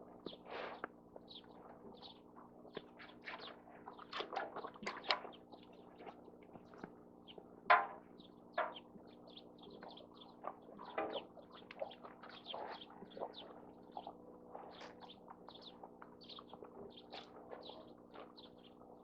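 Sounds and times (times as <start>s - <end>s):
steady low hum: 0.0s - 19.0s
small birds chirping: 0.2s - 19.0s.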